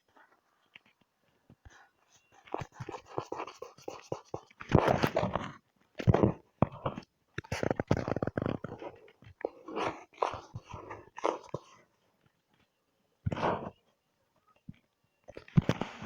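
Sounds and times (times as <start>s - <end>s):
drawing tool scratching paper: 2.5s - 5.1s.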